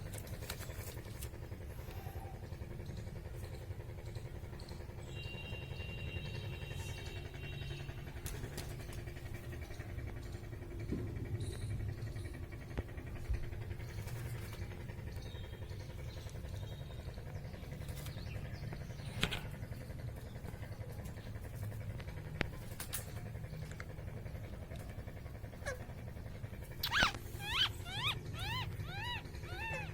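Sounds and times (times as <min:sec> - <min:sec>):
steady low hum: 0:00.0 - 0:29.9
parrot chirping: 0:26.8 - 0:29.9.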